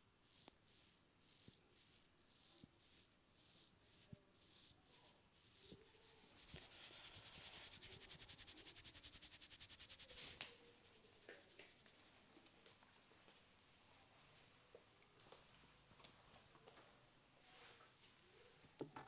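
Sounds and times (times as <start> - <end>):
hands rubbing hair and scalp: 0.2 - 13.0.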